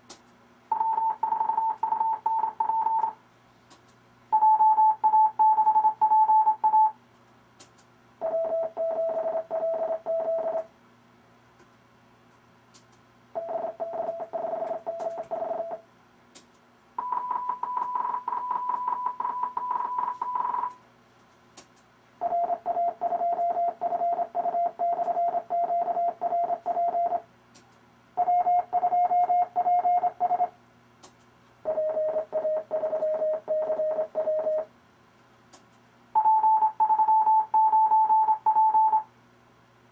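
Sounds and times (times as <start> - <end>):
morse code beeping: 0.7 - 3.1, 4.4 - 6.9, 17.0 - 20.7, 31.7 - 34.7, 36.2 - 39.0.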